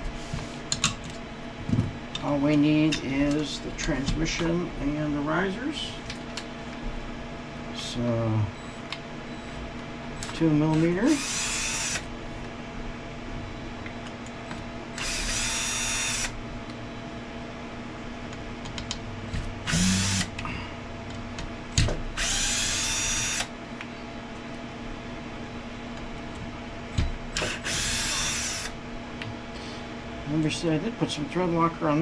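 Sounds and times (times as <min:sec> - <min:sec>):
electric screwdriver whirring: 0:11.1 - 0:12.1, 0:15.0 - 0:16.4, 0:19.6 - 0:20.3, 0:22.2 - 0:23.5, 0:27.4 - 0:28.8.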